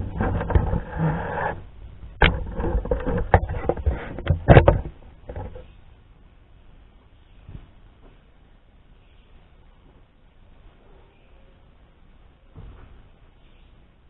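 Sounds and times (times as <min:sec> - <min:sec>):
rustling and scraping: 0:00.0 - 0:05.9
sharp knocks: 0:02.2 - 0:05.6.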